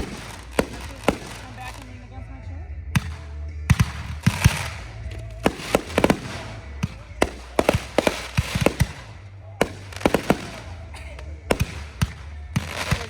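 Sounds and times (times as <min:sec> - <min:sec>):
fireworks bangs and cracks: 0:00.0 - 0:02.0, 0:03.0 - 0:13.0.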